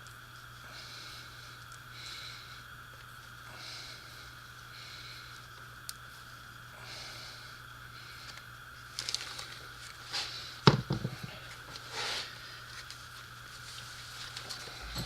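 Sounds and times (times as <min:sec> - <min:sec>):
steady low hum: 0:00.0 - 0:15.0
heavy knock with clatter: 0:10.7 - 0:11.3.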